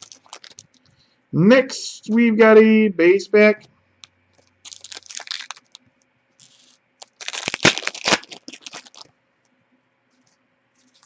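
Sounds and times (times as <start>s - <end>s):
foil wrapper crinkling and tearing: 0.0s - 0.8s, 4.4s - 5.8s, 6.4s - 9.1s.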